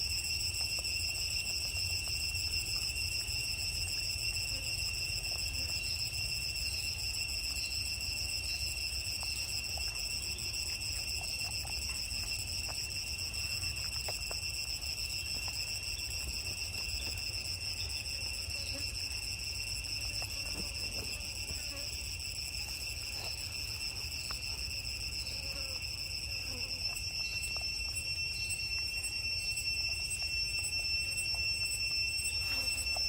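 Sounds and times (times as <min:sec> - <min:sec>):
high-pitched insect drone: 0:00.0 - 0:33.0.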